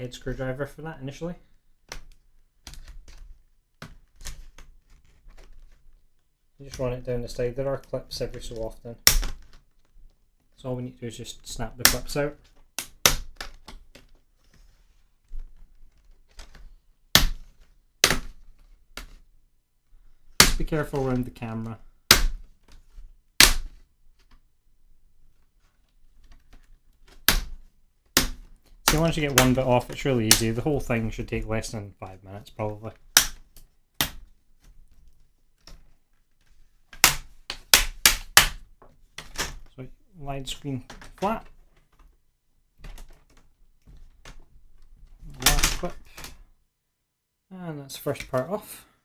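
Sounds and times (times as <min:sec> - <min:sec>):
loud sharp plastic crack: 0:09.0 - 0:09.9, 0:23.4 - 0:23.8, 0:26.3 - 0:30.6, 0:45.3 - 0:46.4.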